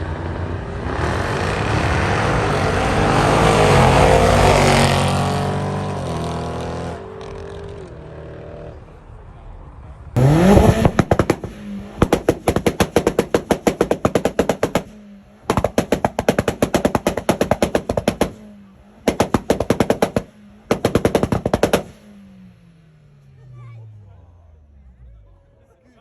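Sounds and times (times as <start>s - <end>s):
car engine revving: 0.1s - 7.8s, 10.2s - 25.2s
exhaust popping and banging: 10.2s - 22.2s.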